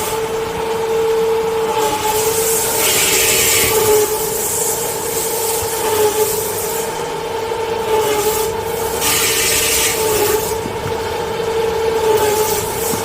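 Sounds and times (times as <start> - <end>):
saw whining: 0.0 - 13.0
blade cutting paper with hissing rasp: 1.8 - 7.1, 8.0 - 10.6, 12.1 - 13.0.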